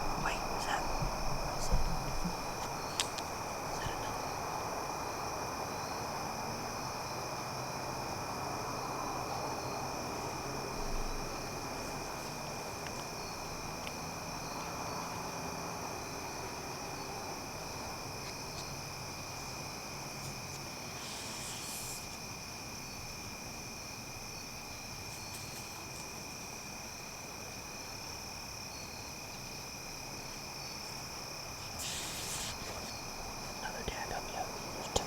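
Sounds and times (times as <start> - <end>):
soft hissing rustles: 0.0 - 4.6, 18.2 - 22.4, 25.0 - 26.3, 30.9 - 35.0
crickets and insects trilling: 0.0 - 35.0.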